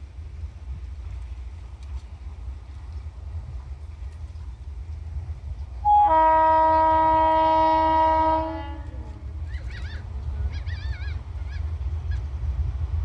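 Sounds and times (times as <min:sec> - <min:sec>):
train air horn blast: 0:05.8 - 0:09.3.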